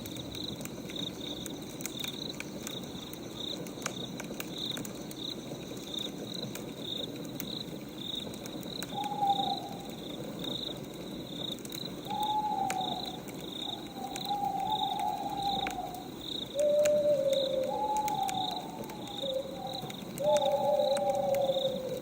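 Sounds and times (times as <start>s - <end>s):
crickets chirping: 0.0s - 22.0s
wood fire hissing and crackling: 0.0s - 22.0s
drawn-out hooting calls: 8.9s - 10.0s, 12.0s - 22.0s.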